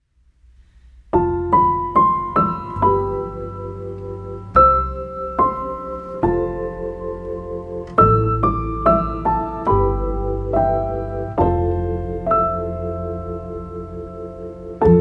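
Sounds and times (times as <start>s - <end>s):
slow piano melody: 1.1s - 15.0s.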